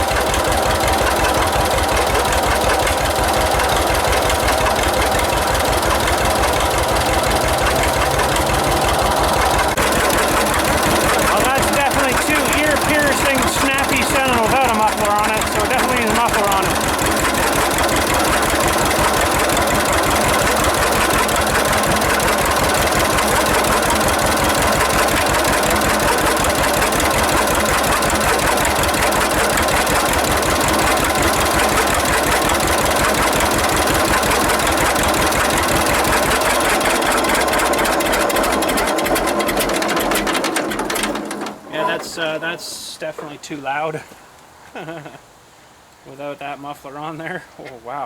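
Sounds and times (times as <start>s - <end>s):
tractor engine exhaust pulses: 0.0s - 44.5s
person speaking: 11.0s - 17.0s, 41.7s - 44.2s.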